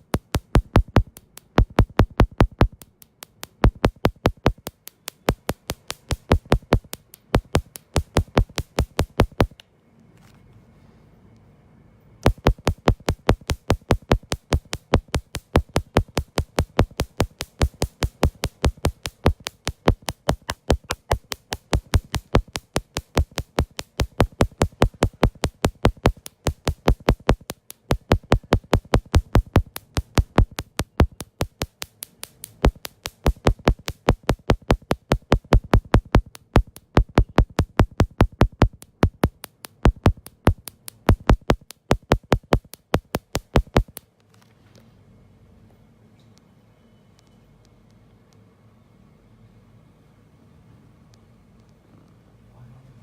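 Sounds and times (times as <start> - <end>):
electronic dance music: 12.3 - 27.4.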